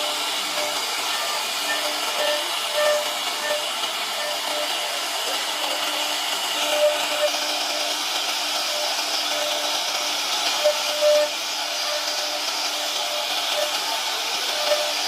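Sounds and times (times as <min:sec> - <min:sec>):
thin steady hum: 0:00.0 - 0:08.0
router spindle cutting wood: 0:00.0 - 0:15.0.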